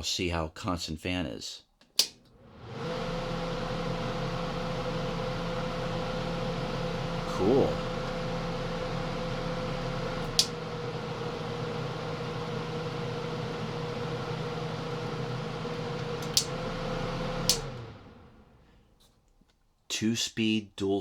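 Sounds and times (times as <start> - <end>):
sharp switch clicks: 1.8 - 2.3, 16.2 - 16.6, 17.4 - 17.7
dehumidifier fan hum: 2.0 - 19.0.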